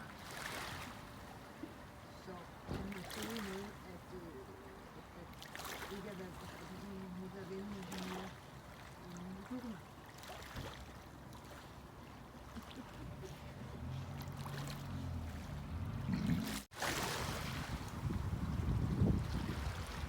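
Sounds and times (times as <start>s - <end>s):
small waves lapping on beach: 0.0s - 20.0s.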